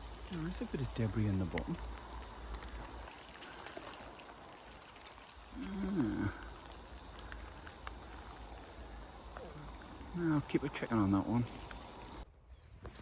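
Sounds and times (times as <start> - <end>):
faint rustling clicks: 0.0 - 5.6.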